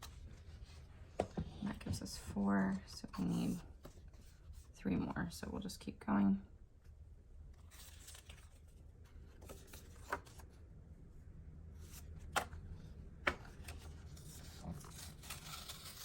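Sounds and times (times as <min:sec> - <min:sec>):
paper rustling: 0:07.6 - 0:10.5, 0:13.2 - 0:16.0.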